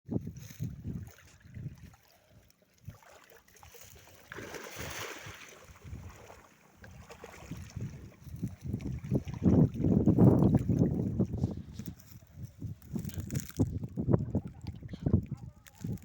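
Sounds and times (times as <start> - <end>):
outdoor water: 0.0 - 16.0
wind rumble on microphone: 0.1 - 3.0, 4.8 - 16.0
rushing splash: 4.2 - 7.9.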